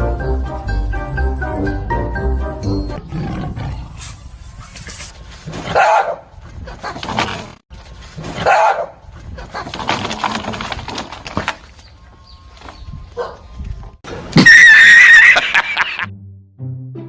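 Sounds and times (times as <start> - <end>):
dog barking: 5.7 - 7.0, 8.4 - 9.7, 13.2 - 13.4.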